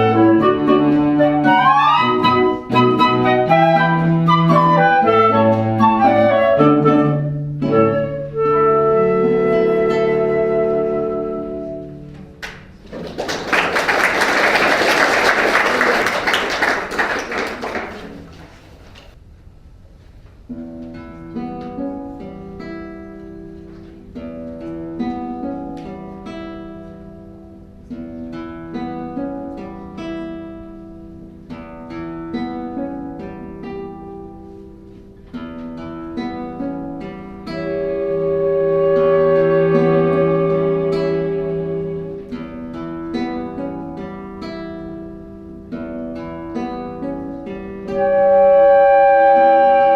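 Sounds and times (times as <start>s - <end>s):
acoustic guitar plucking: 0.0s - 12.8s, 20.5s - 49.9s
audience applause: 12.4s - 19.1s
held instrumental note: 37.5s - 42.6s, 47.8s - 49.9s.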